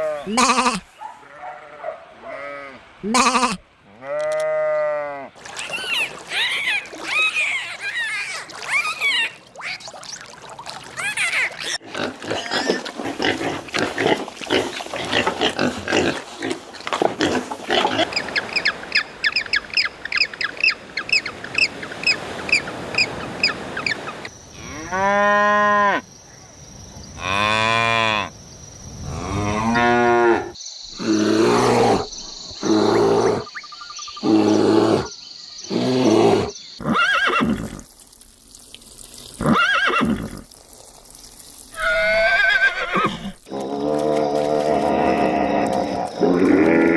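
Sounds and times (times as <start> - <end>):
rapid high animal calls: 5.6 - 9.9.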